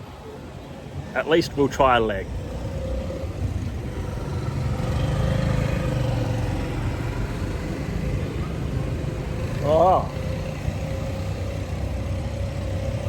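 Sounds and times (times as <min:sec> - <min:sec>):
vehicle engines passing: 0:00.0 - 0:13.0.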